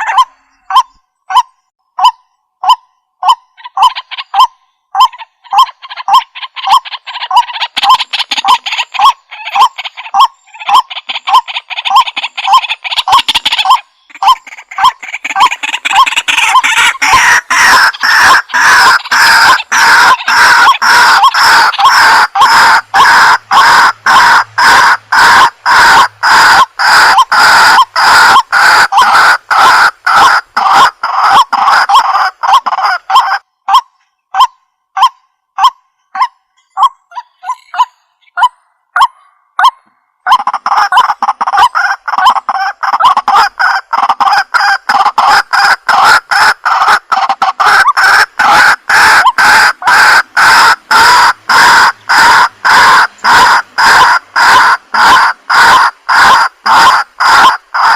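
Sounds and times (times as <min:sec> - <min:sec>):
waterhen calling: 0:00.0 - 0:57.9.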